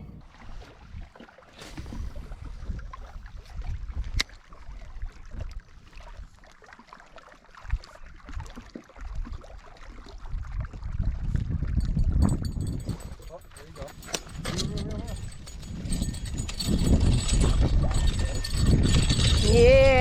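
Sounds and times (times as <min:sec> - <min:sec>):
wind buffeting microphone: 0:01.8 - 0:04.2, 0:10.2 - 0:20.0.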